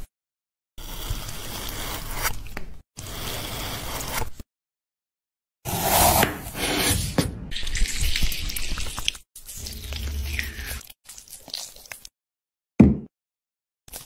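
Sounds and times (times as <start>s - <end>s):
wet food squishing and scraping: 7.8s - 12.1s.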